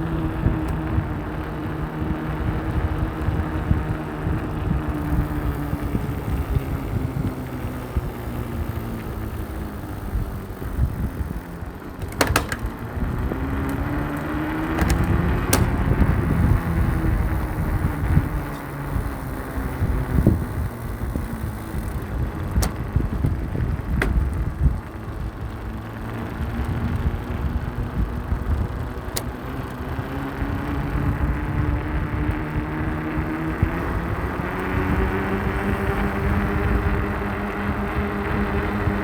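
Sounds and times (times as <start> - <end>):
electric motor whine: 0.0 - 39.0
skateboard wheels rumbling on pavement: 0.0 - 39.0
sharp clicks: 5.0 - 25.3.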